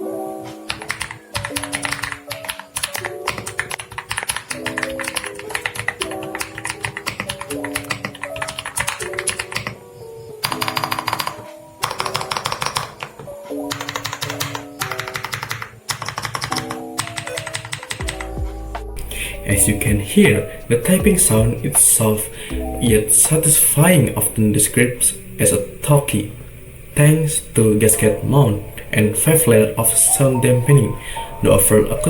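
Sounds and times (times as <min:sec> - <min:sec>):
background music: 0:00.0 - 0:32.0
mechanical keyboard typing: 0:00.7 - 0:09.8, 0:10.4 - 0:18.3.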